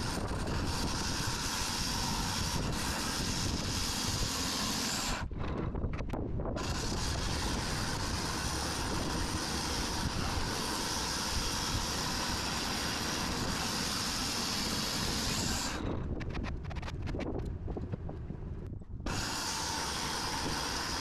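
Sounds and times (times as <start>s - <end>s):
saw cutting log: 0.0s - 5.8s, 6.6s - 17.2s, 19.0s - 21.0s
sawmill machine running: 0.0s - 17.6s, 19.0s - 21.0s.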